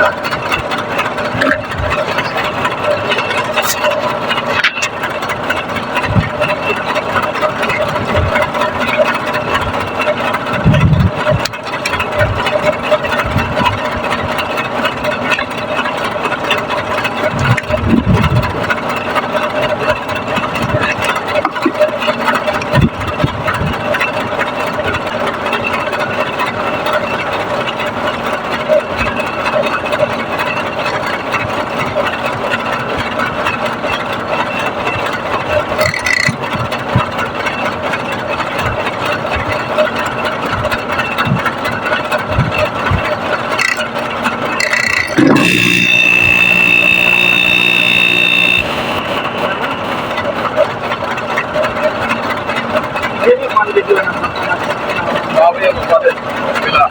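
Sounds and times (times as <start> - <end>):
motor humming: 43.6 - 52.6.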